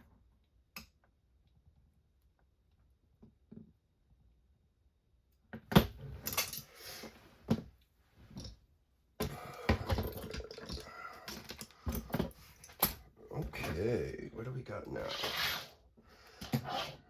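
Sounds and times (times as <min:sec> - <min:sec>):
small parts clicking and clinking: 0:09.9 - 0:13.0.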